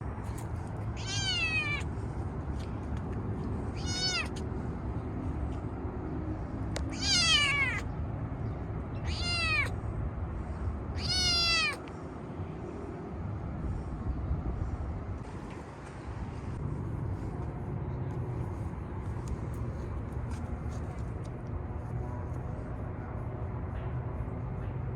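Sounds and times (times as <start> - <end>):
kitten meowing: 1.0 - 1.8, 3.8 - 4.4, 6.9 - 7.9, 9.0 - 9.7, 11.0 - 11.8.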